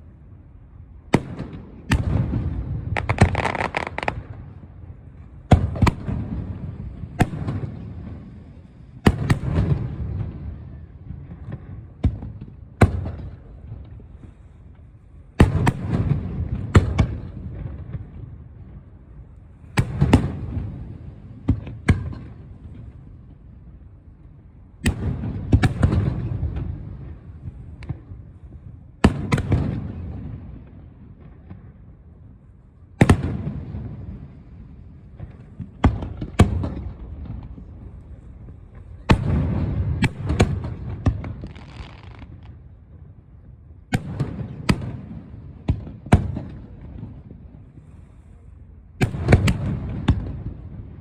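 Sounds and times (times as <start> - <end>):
fireworks bangs: 1.2 - 13.8, 33.0 - 42.7, 49.0 - 51.0
fireworks crackling: 2.1 - 4.8, 35.3 - 42.7.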